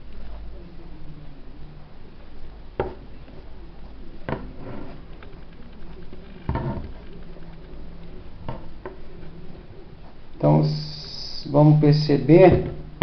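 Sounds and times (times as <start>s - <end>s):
faint low hum: 0.0s - 13.0s
object scraping: 4.3s - 5.2s.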